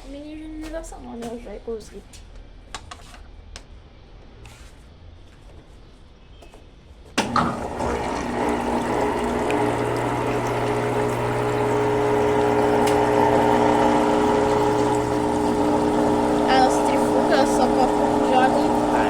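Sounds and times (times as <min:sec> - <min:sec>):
rushing water: 0:07.2 - 0:19.0
washing machine humming: 0:07.2 - 0:19.0.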